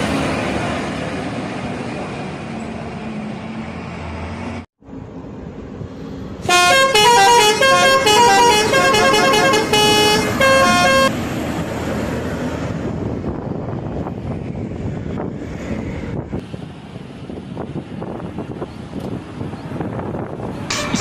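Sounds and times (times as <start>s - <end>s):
bus engine: 0.0s - 21.0s
road noise: 0.0s - 21.0s
musical air horn tune: 6.5s - 11.1s, 20.7s - 21.0s.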